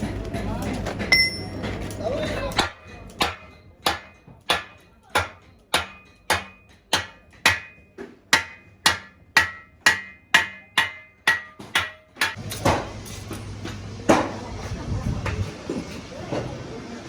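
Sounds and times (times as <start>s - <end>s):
hammer striking metal: 1.0s - 14.4s.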